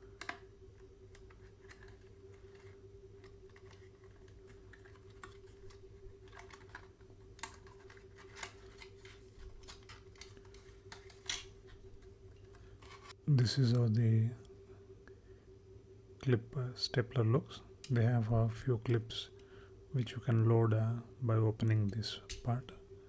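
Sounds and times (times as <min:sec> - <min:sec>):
faint steady hum: 0:00.0 - 0:23.0
stapler packaging clicks and rustles: 0:01.2 - 0:13.1.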